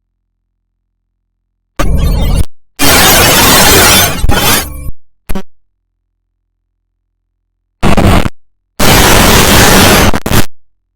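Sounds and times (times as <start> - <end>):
harsh noise bursts: 1.8 - 5.5, 7.8 - 10.5.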